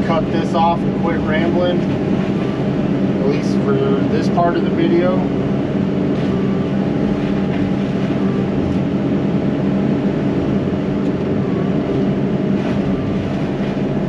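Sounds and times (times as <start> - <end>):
excavator diesel engine droning: 0.0 - 14.0.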